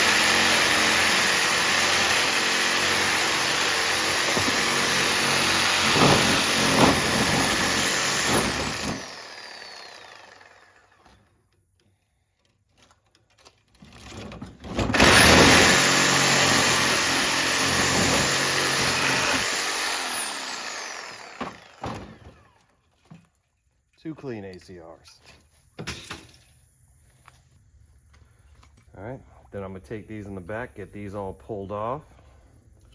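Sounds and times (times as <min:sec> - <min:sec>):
power cutting tool cutting metal: 0:00.0 - 0:11.0, 0:14.9 - 0:22.5.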